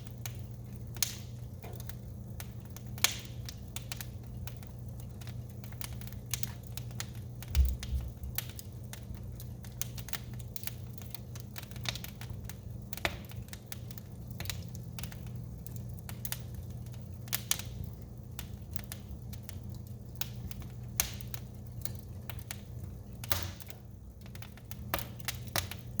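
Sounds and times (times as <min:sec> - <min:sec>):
steady low hum: 0:00.0 - 0:26.0
wood fire crackling: 0:00.0 - 0:26.0.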